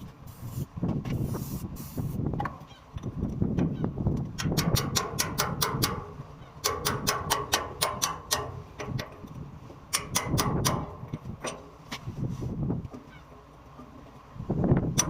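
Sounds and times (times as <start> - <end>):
hammer striking metal: 4.4 - 9.1, 9.9 - 11.6.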